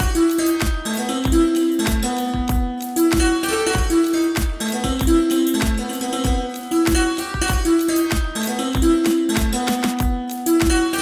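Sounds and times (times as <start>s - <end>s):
plucked-string melody: 0.0s - 11.0s
deep bass-drum hits: 1.3s - 7.7s.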